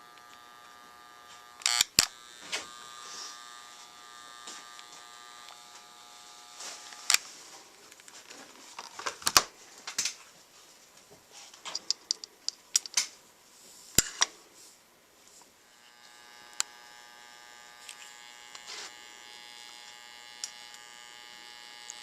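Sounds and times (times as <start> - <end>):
soldering gun humming: 0.0 - 7.2, 15.6 - 22.0.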